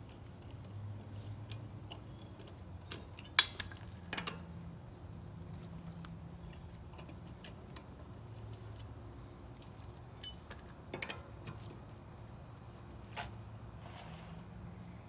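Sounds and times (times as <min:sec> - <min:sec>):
lug wrench metallic clinks: 0:02.9 - 0:04.4, 0:10.2 - 0:11.2.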